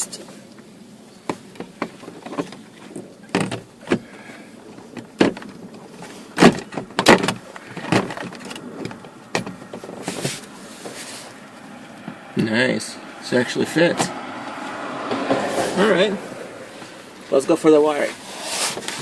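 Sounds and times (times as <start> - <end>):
short scrapes: 10.0 - 11.4, 14.6 - 17.1, 18.1 - 19.0.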